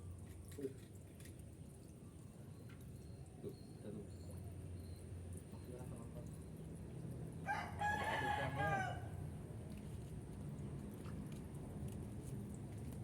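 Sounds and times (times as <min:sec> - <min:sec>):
rooster crowing: 0:07.5 - 0:09.1.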